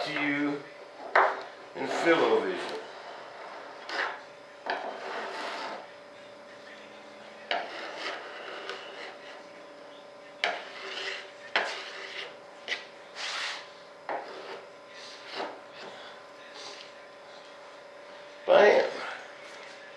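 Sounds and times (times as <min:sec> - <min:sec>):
hand scraping and rubbing: 0:01.8 - 0:05.9, 0:07.4 - 0:09.5, 0:10.4 - 0:17.0.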